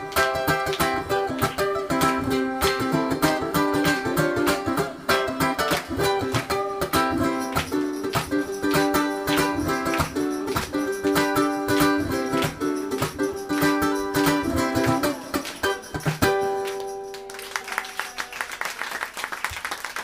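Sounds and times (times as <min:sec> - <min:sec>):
ukulele strumming: 0:00.0 - 0:17.5
audience applause: 0:16.6 - 0:20.0.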